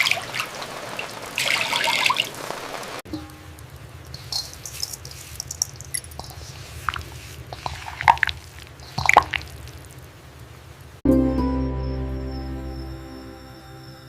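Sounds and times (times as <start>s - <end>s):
wet squishy food handling: 3.6s - 10.2s
soft background music: 11.1s - 14.0s.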